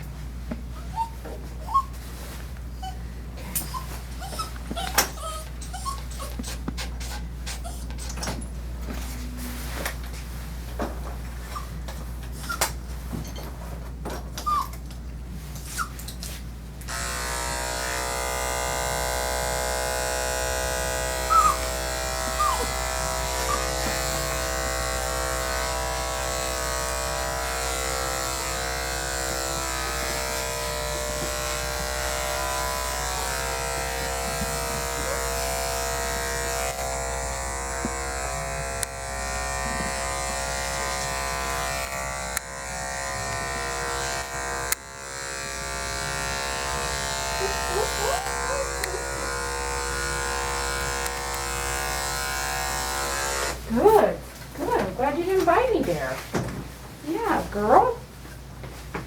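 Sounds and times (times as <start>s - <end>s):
electric clippers buzzing: 16.9s - 54.0s.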